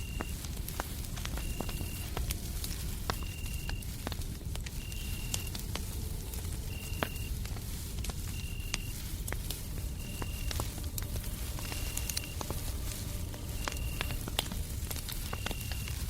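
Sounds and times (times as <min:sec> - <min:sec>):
cricket chirping: 0:00.0 - 0:00.4, 0:01.3 - 0:02.1, 0:03.1 - 0:04.0, 0:04.7 - 0:07.4, 0:08.2 - 0:09.0, 0:09.7 - 0:16.0
low white-noise rumble: 0:00.0 - 0:16.0
wood fire crackling and popping: 0:00.0 - 0:16.0.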